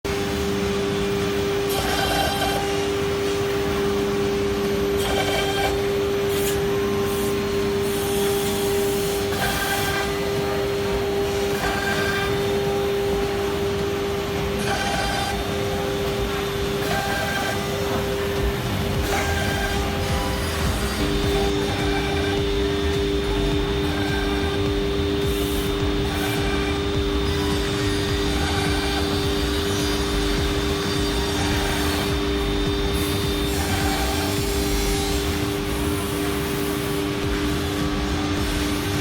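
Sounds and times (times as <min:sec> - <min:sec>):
wood router spindle whine: 0:00.1 - 0:39.0
rising and falling machine tones: 0:07.3 - 0:39.0.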